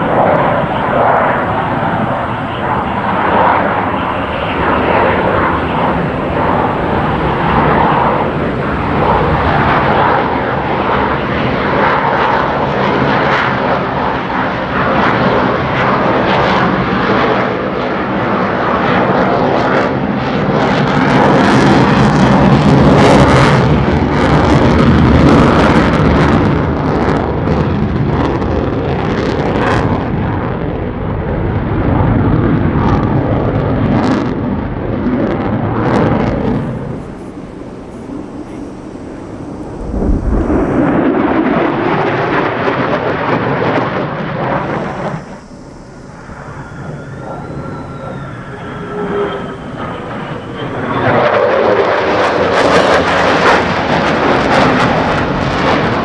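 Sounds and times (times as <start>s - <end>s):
jet exhaust crackle: 0.0s - 19.2s, 19.8s - 30.4s, 31.5s - 56.0s
fighter jet engine roaring: 0.0s - 56.0s.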